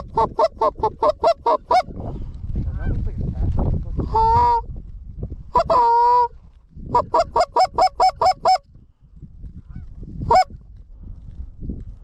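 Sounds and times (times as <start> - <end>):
goose clucking: 0.1 - 1.9.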